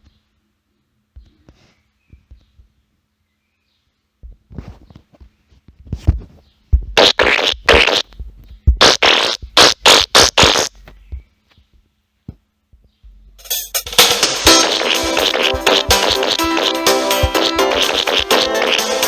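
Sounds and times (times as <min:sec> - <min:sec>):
fart sound effects: 0:07.0 - 0:08.1, 0:08.8 - 0:10.8, 0:14.0 - 0:19.0.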